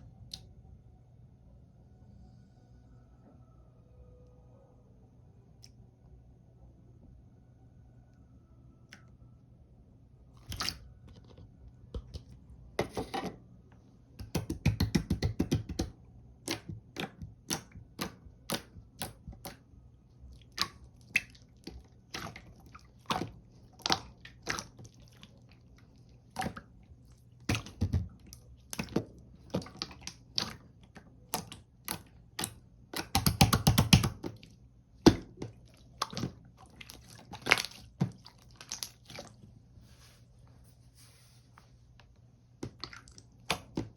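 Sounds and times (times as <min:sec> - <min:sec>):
sticky slime clicks and pops: 0:31.3 - 0:34.2.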